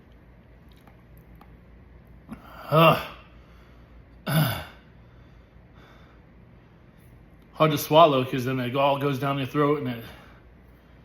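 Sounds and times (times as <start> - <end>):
man making throaty sounds: 2.3 - 3.3.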